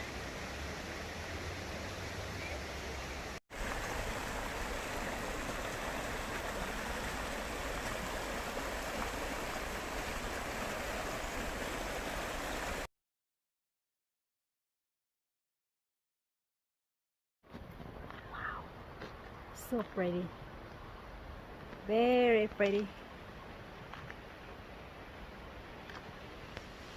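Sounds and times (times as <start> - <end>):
stream water rushing: 0.0 - 12.9.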